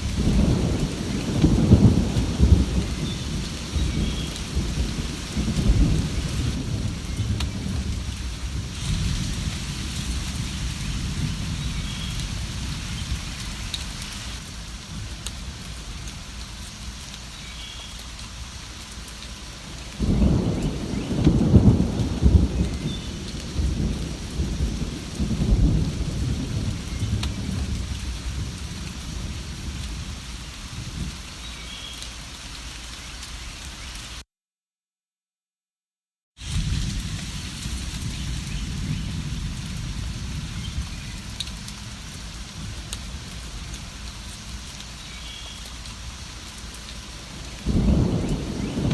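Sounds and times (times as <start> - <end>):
thunderclap: 0.0 - 14.0, 20.0 - 30.1, 47.6 - 48.9
thunder rumbling: 0.0 - 16.4, 19.6 - 31.2, 36.4 - 44.2, 47.0 - 48.9
steady rain falling: 0.0 - 34.2, 36.4 - 48.9.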